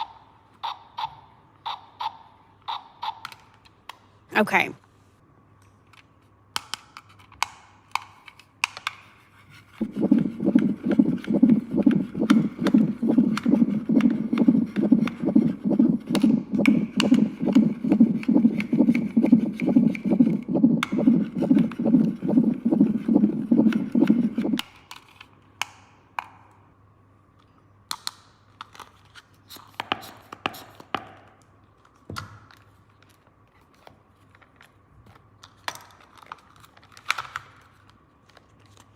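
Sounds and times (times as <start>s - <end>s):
rapid repeated scraping: 9.5s - 24.6s.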